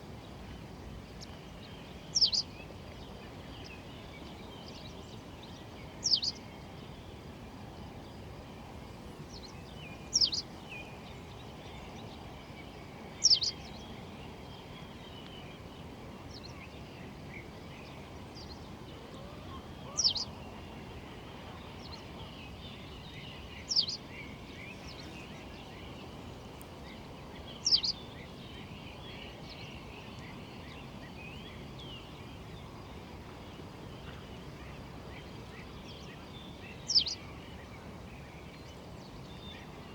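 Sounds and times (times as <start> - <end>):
steady background hiss: 0.0 - 39.9
faint bird chirps: 27.6 - 28.0.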